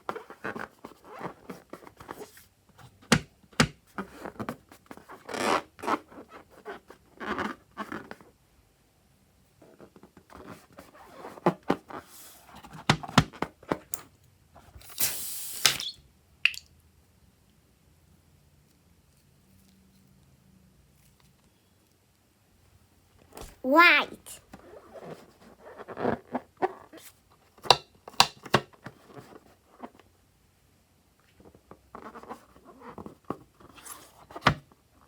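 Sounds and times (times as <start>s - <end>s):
short hissing burst: 14.8s - 16.0s.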